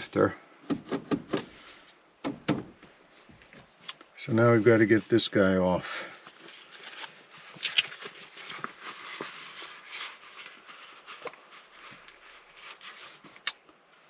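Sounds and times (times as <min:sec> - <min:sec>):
hands rustling: 0:02.8 - 0:13.4.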